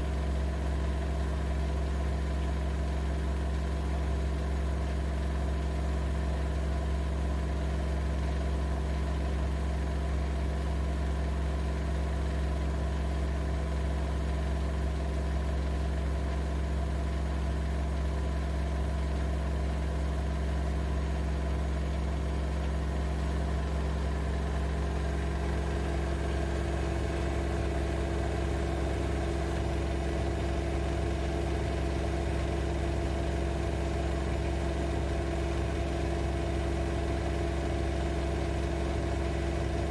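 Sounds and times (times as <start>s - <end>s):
washing machine humming: 22.2s - 39.9s.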